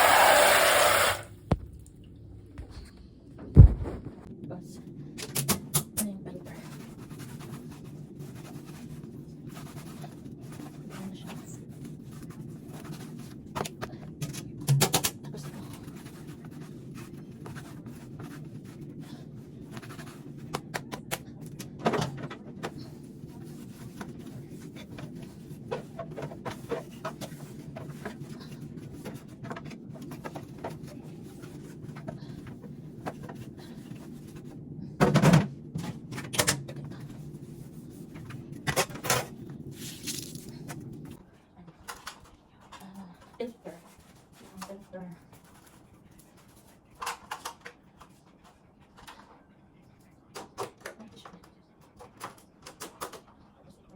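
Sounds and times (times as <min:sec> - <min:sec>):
steady low hum: 0:01.2 - 0:05.3.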